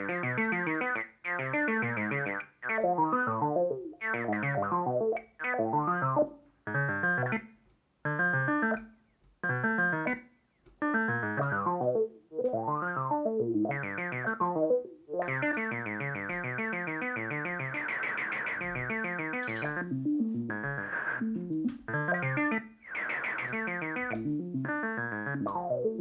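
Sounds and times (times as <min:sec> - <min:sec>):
analog synthesizer sequence: 0:10.8 - 0:26.0.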